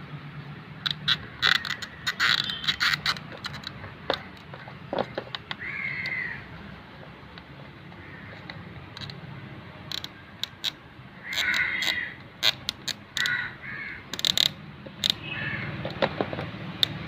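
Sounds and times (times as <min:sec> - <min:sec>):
crow cawing: 0:05.6 - 0:06.5, 0:08.0 - 0:08.4, 0:11.2 - 0:12.2, 0:13.2 - 0:14.0, 0:15.2 - 0:15.7.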